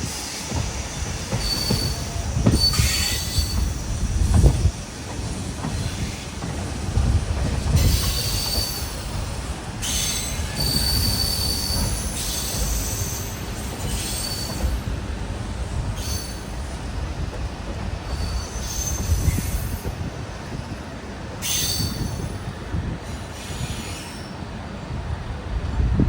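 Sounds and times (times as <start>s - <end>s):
wheels squealing on rails: 0.0s - 20.7s, 21.4s - 24.6s
train rumbling past: 0.0s - 26.0s
high-pitched wheel squeals: 1.3s - 3.9s, 7.8s - 9.0s, 9.8s - 14.7s.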